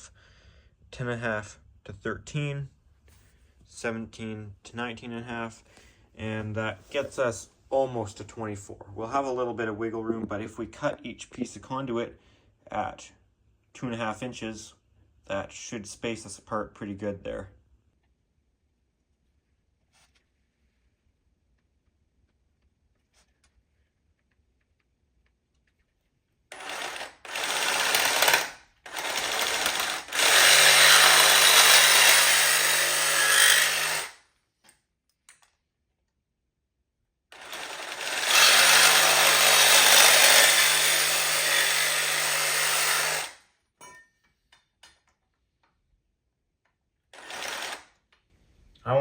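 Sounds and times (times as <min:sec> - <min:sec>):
power saw cutting conduit: 0:26.5 - 0:34.2, 0:37.3 - 0:43.4, 0:47.1 - 0:47.9.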